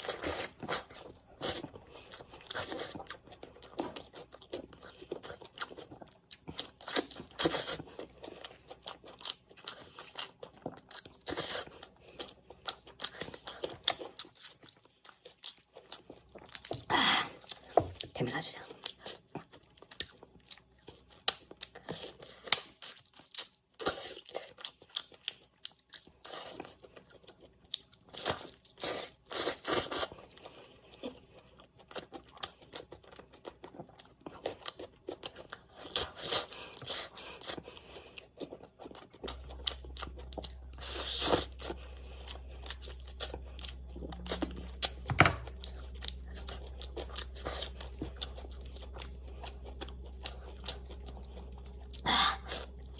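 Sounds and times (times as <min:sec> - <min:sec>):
person chewing food: 0:00.0 - 0:52.9
steady low hum: 0:35.2 - 0:52.9.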